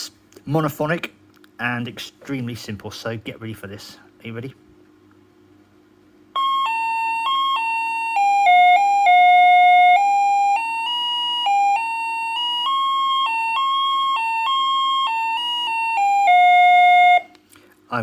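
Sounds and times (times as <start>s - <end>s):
electronic doorbell melody: 6.4s - 17.3s.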